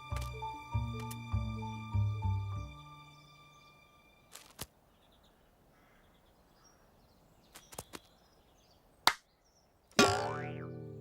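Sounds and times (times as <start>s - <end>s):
faint bird chirps: 4.8s - 10.0s.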